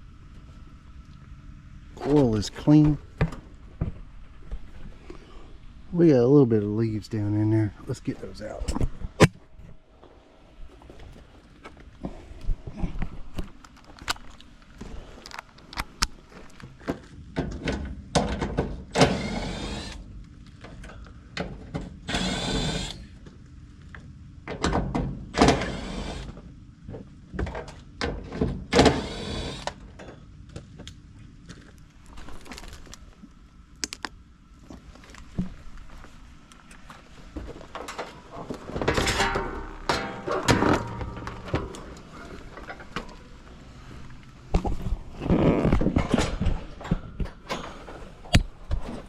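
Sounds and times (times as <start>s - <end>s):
dry leaves rustling and crackling: 31.5s - 33.2s.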